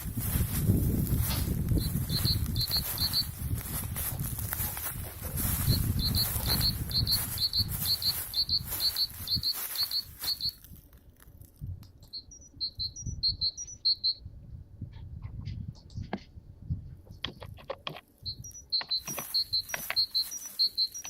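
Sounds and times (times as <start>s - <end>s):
steady rustling noise: 0.0s - 11.8s.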